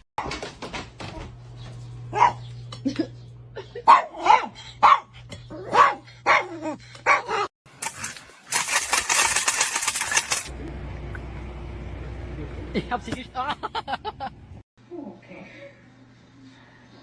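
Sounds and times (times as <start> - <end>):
dog barking: 2.1 - 2.5, 3.8 - 7.5.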